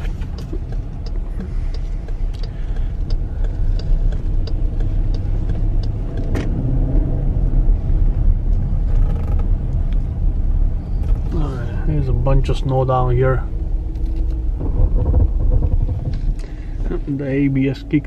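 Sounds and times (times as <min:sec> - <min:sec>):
light ticks: 0:00.0 - 0:06.5
car engine and tyres rumbling: 0:00.0 - 0:18.0.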